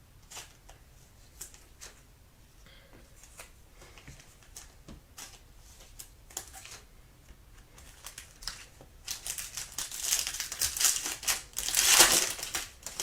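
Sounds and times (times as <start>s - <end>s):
packaging crinkling: 7.8s - 13.0s.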